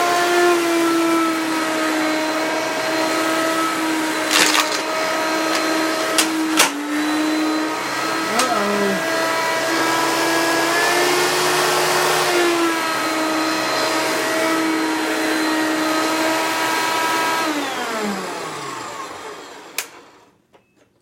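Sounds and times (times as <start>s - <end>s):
vacuum motor winding down: 0.0s - 20.3s
upright vacuum cleaner running: 0.0s - 20.4s.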